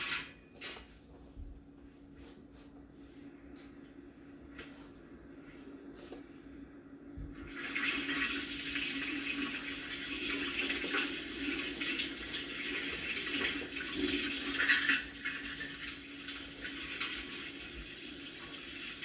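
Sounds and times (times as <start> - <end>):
tap water running into sink: 7.3 - 19.0.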